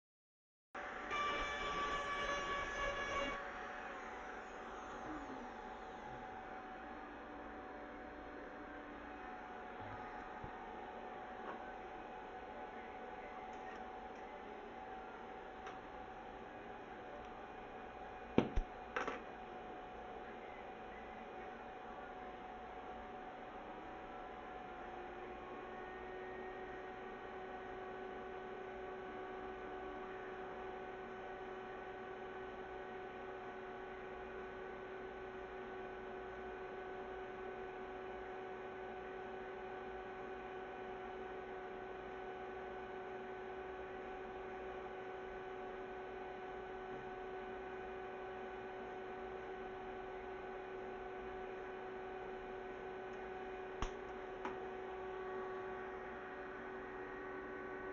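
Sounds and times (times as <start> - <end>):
torch rig humming and whistling: 0.8 - 10.6.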